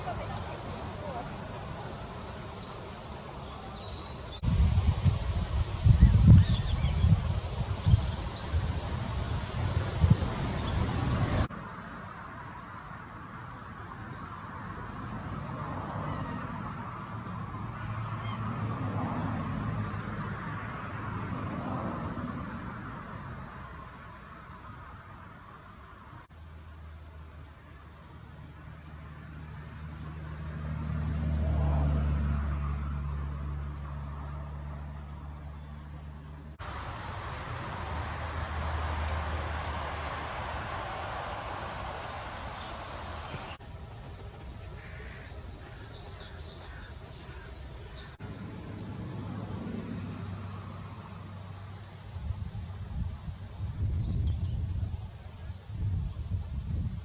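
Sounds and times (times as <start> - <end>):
small birds chirping: 0.0 - 11.5, 35.4 - 48.9
low engine drone passing: 30.2 - 52.0
waterfowl calling: 36.6 - 43.6.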